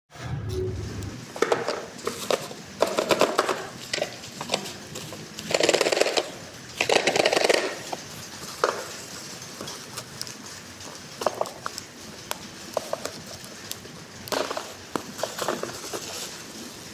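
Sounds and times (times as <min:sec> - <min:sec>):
plastic parts clicking: 0:01.4 - 0:08.0
packaging rustling: 0:02.0 - 0:16.8.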